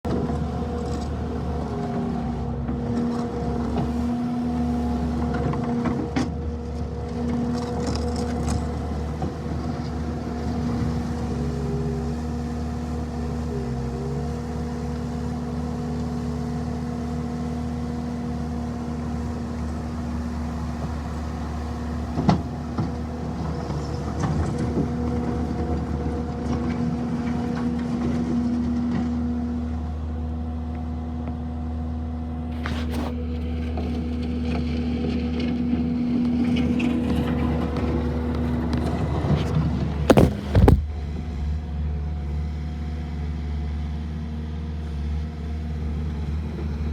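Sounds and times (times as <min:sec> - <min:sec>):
diesel engine running: 0:00.0 - 0:46.9
sharp knock: 0:40.1 - 0:40.9.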